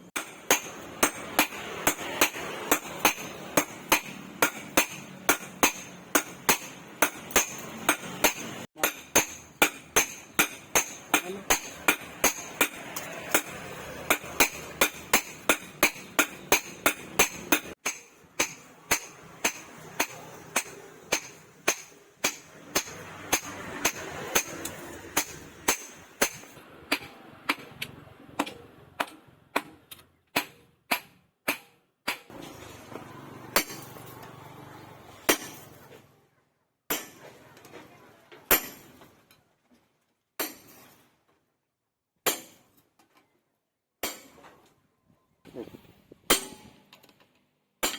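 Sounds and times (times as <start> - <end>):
hammer striking steel on anvil: 0.1 - 32.4, 33.6 - 34.0, 35.3 - 35.8, 36.9 - 37.4, 38.5 - 39.1, 40.4 - 41.0, 42.2 - 42.6, 44.0 - 44.4, 46.3 - 46.8.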